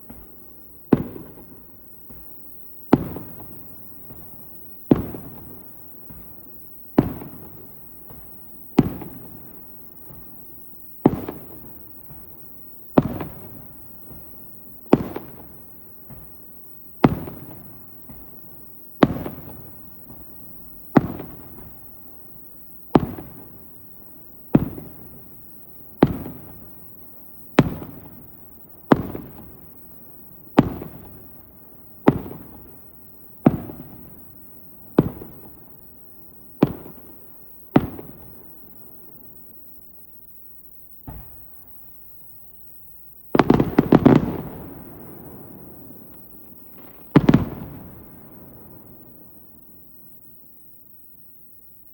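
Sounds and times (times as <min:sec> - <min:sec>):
firework shells bursting: 0:43.3 - 0:49.2.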